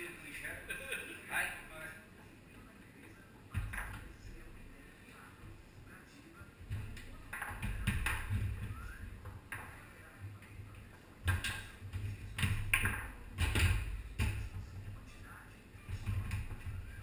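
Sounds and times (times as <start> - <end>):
foosball clacks: 6.6 - 9.8, 11.2 - 15.0.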